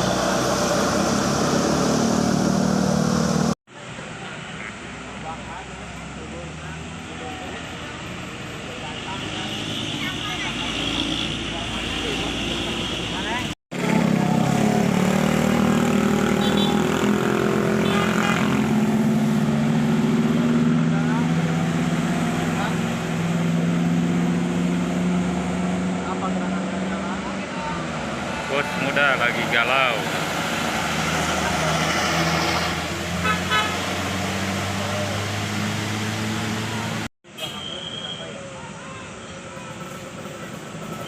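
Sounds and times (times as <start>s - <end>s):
bus engine accelerating: 0.0s - 3.6s, 10.4s - 37.1s.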